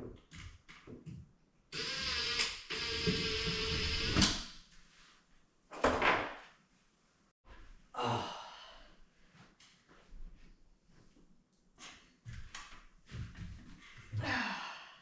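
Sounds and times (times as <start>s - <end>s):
cordless drill driving a screw: 1.8s - 4.4s.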